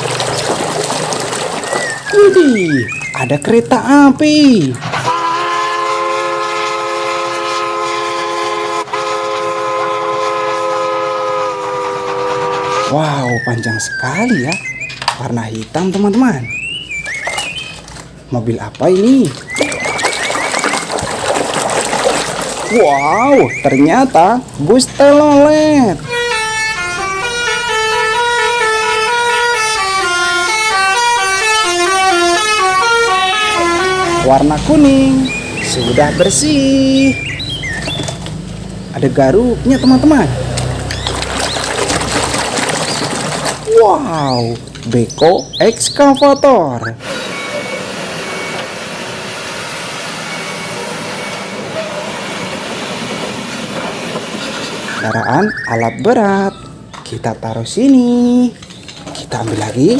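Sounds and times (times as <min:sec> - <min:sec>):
train horn chord: 0:05.0 - 0:13.1, 0:26.0 - 0:34.9, 0:50.3 - 0:52.5.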